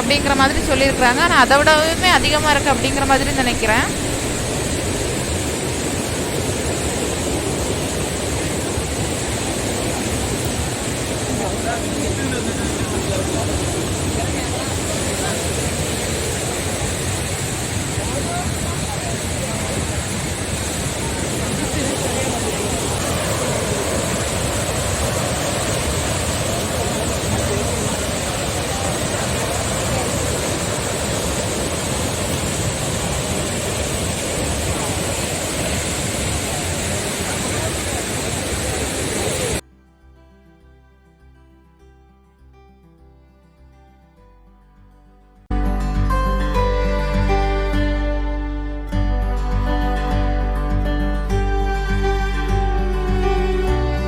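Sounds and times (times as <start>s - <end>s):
waterfall roaring: 0.0s - 39.6s.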